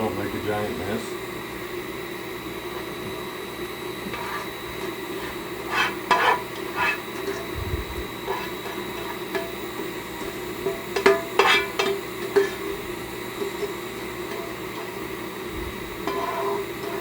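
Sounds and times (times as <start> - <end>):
steady low hum: 0.0 - 17.0
spoon scraping a pan: 4.0 - 17.0.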